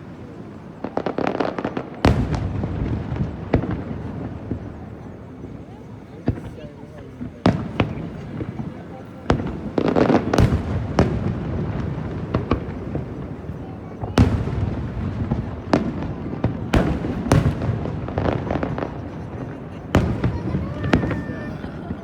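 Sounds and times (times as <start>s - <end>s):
firework shells bursting: 9.3s - 21.8s.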